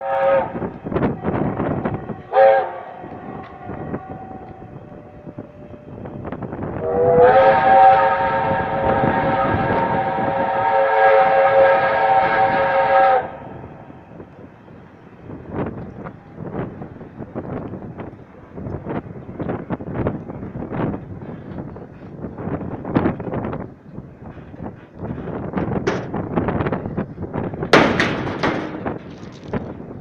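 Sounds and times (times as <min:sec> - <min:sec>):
steam locomotive whistle blowing: 0:00.0 - 0:13.6.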